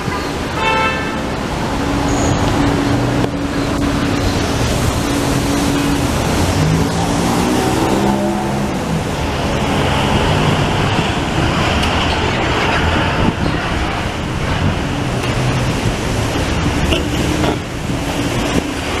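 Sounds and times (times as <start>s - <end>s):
roar of passing vehicles: 1.2s - 19.0s.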